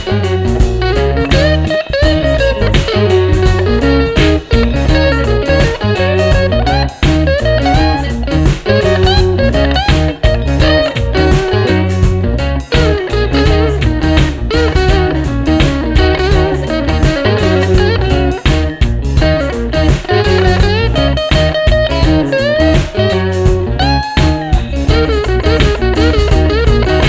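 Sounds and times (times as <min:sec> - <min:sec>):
guitar-led background music: 0:00.0 - 0:27.0.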